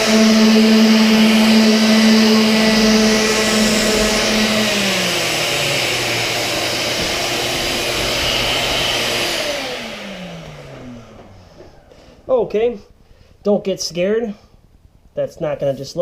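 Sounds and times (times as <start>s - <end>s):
orbital sander running: 0.0s - 12.7s
vacuum motor whine: 0.0s - 12.7s.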